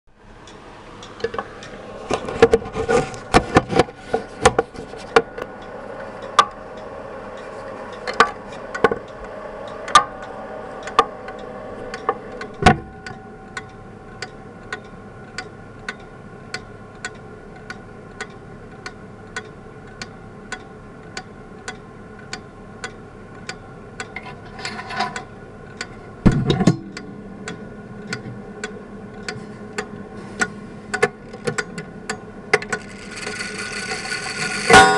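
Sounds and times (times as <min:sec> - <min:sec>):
clock ticking: 0:07.9 - 0:24.2
heavy thump: 0:12.6 - 0:13.0.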